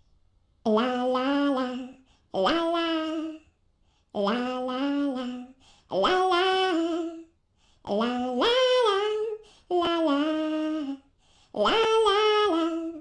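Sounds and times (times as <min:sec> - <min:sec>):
woman singing unaccompanied: 0:00.7 - 0:03.5, 0:04.2 - 0:13.0.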